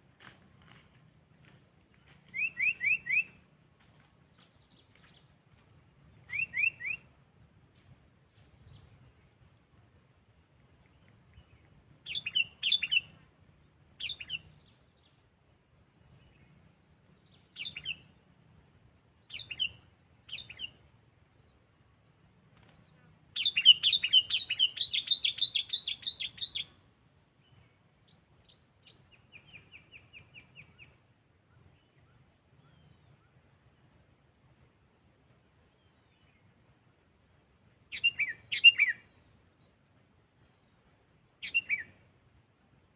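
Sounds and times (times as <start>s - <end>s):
bulbul calling: 2.3s - 3.4s, 6.3s - 7.1s, 12.0s - 13.2s, 23.3s - 26.7s, 37.9s - 39.1s, 41.3s - 42.0s.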